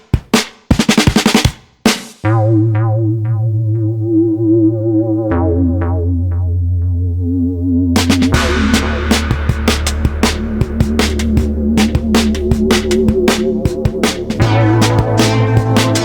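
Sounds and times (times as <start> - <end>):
drum hits: 0.0 - 2.4, 8.0 - 16.0
steady bass line: 2.2 - 16.0
synthesizer melody: 2.3 - 16.0.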